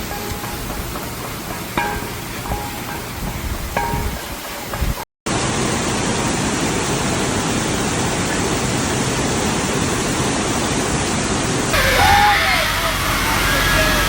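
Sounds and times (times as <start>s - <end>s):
plucked string music: 0.0s - 4.9s
rushing floodwater: 0.0s - 14.0s.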